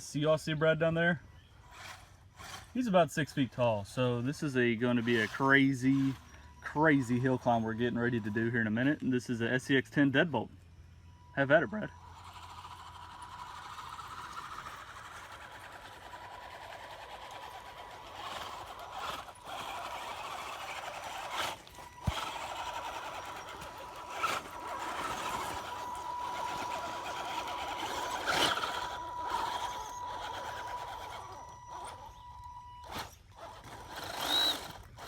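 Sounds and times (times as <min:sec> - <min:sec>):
electric motor and gearbox whine: 0:00.0 - 0:35.0
toy truck bumping over ground: 0:12.2 - 0:32.2, 0:32.8 - 0:35.0.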